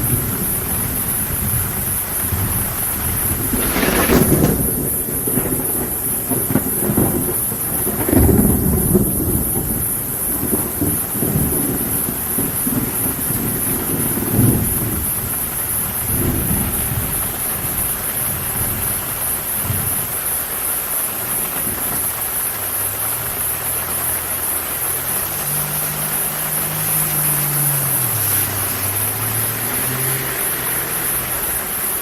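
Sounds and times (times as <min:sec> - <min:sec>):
thunder rumbling: 0:00.0 - 0:24.2
steady rain falling: 0:00.0 - 0:32.0
high-pitched hiss: 0:19.3 - 0:32.0
passing car engine hum: 0:23.3 - 0:32.0.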